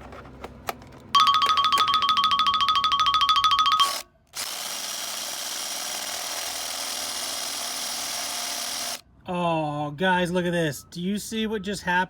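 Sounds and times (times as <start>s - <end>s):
power drill running: 3.8s - 9.0s.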